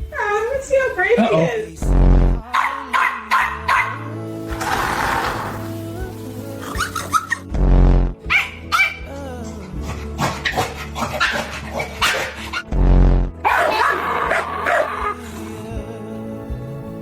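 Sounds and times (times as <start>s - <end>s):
background music: 0.0s - 17.0s
heavy low thuds: 1.8s - 2.4s, 7.5s - 9.3s, 12.6s - 13.5s
dog barking and yipping: 2.5s - 4.1s, 8.3s - 9.0s, 10.2s - 12.6s, 13.4s - 15.2s.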